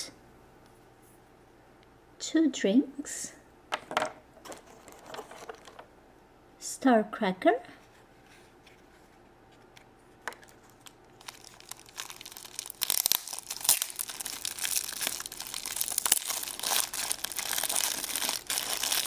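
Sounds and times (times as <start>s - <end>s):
plastic packaging crinkling: 10.3s - 19.0s.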